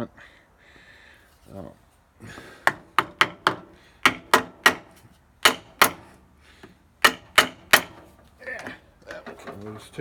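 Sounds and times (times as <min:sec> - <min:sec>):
hammer tapping on metal: 0:02.6 - 0:08.0.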